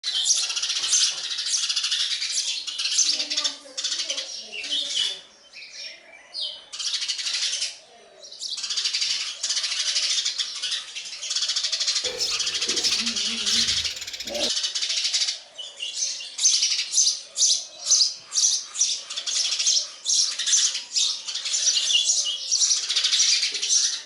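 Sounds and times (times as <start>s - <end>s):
chicks begging calls: 12.1s - 14.5s.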